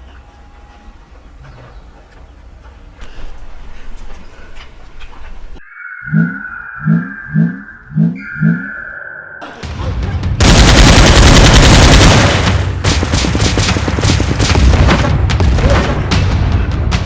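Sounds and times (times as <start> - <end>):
rapid automatic gunfire: 10.4 - 15.9.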